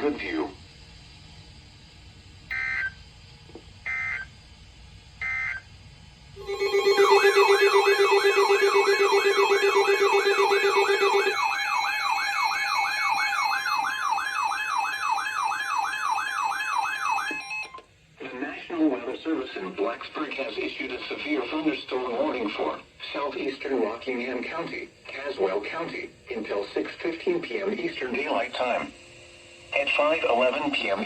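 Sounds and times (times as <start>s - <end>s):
low buzzing tone: 6.3s - 14.7s
warbling siren alert tone: 6.4s - 17.7s.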